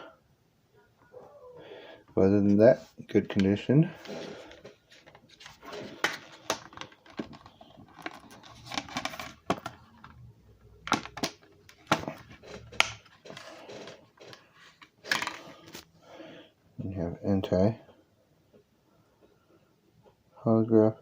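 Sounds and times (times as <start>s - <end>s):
plastic packaging rustling: 4.0s - 15.9s.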